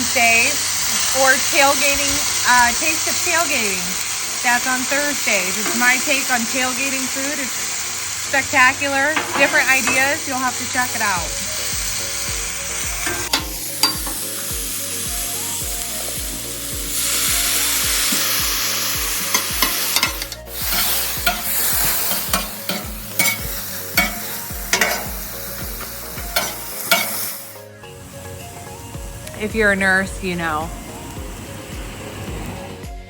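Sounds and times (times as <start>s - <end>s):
food sizzling on a griddle: 0.0s - 33.0s
metal spatulas scraping steel: 13.1s - 14.2s, 19.3s - 27.4s.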